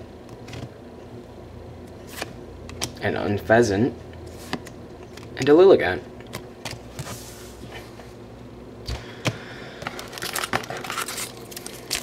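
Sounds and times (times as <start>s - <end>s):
cards and wrappers rustling: 9.8s - 12.0s.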